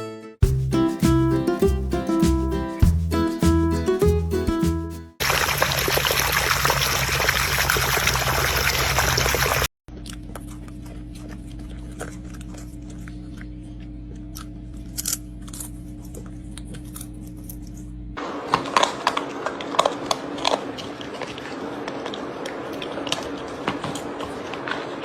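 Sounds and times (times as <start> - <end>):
electrical hum: 8.2 - 25.0
puppy chewing: 9.9 - 17.1, 18.5 - 25.0.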